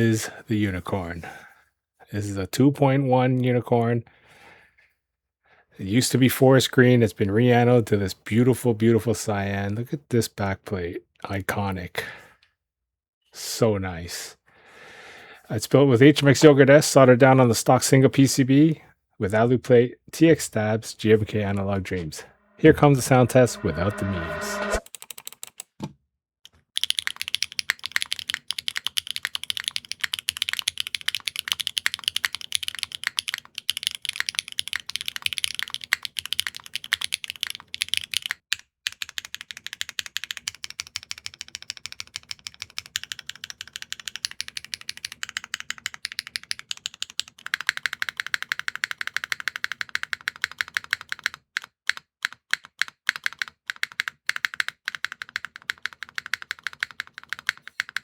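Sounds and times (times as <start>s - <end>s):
mechanical keyboard key clacks: 26.8s - 58.0s.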